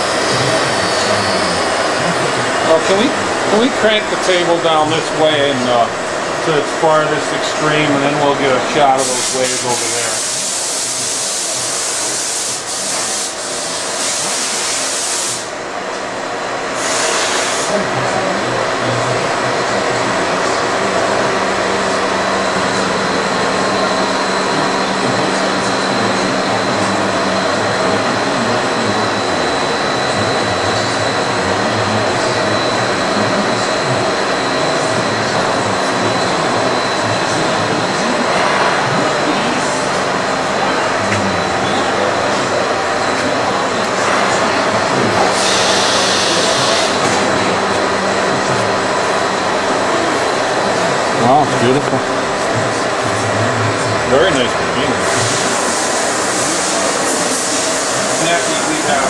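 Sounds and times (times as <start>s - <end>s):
machinery running with whir: 0.0s - 59.0s
air hissing: 8.9s - 15.5s, 16.8s - 17.8s, 45.2s - 47.0s, 55.0s - 59.0s.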